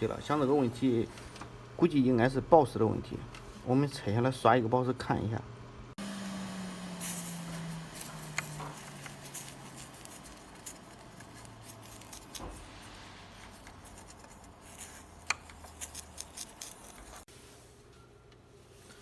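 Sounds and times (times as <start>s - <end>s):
clicks and scrapes of tools: 13.5s - 17.3s.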